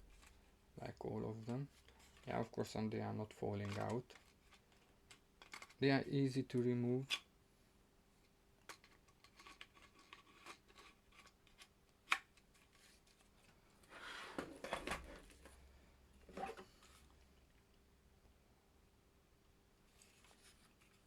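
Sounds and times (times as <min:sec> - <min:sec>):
plastic scraping: 0:16.3 - 0:17.1.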